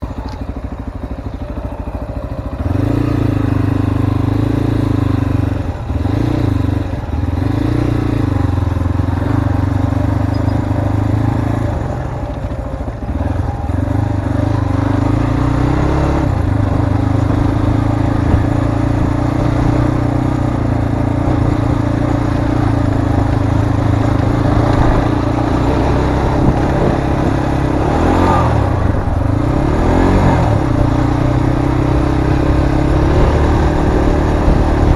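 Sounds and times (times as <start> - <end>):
motorcycle engine running: 0.0 - 34.9.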